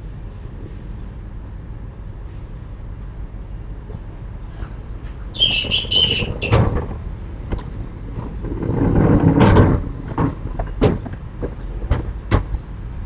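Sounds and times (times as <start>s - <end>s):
sliding shutters rumbling on track: 3.8s - 13.0s.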